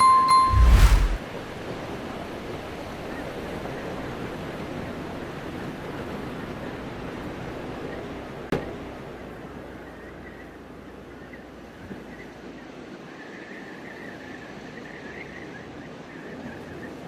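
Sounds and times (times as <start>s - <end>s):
chime: 0.0s - 1.1s
snowstorm wind rushing: 0.4s - 1.2s.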